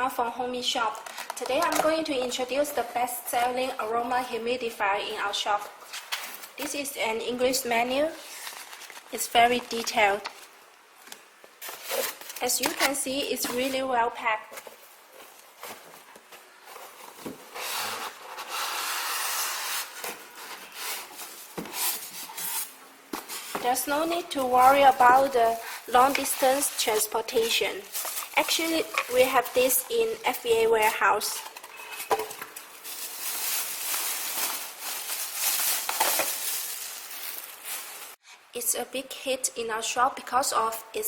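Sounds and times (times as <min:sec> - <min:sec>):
packaging rustling and scraping: 0:00.9 - 0:03.7, 0:05.5 - 0:06.7, 0:08.0 - 0:10.6, 0:11.6 - 0:13.8, 0:14.4 - 0:38.2.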